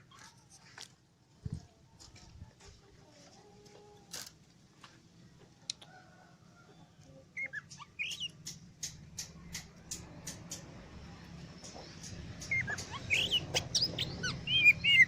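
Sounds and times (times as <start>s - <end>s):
bird sharp clicking calls: 7.4s - 10.8s, 11.4s - 15.0s
bird whistled notes: 12.4s - 15.0s.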